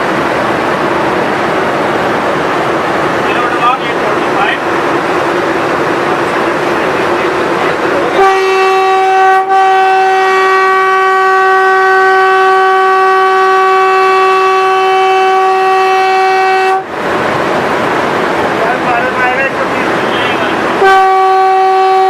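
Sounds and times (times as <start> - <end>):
train rushing at speed: 0.0 - 22.0
train horn blast: 8.1 - 16.9, 20.1 - 22.0.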